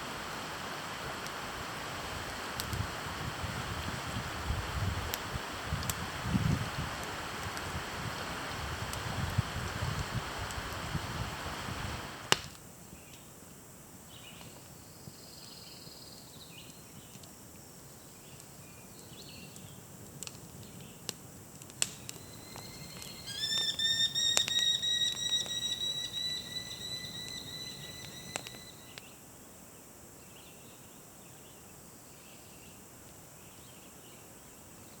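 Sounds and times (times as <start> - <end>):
sharp pops: 21.6 - 22.2
faint bird chirps: 22.1 - 29.2
bird calling rapid high notes: 22.2 - 29.0.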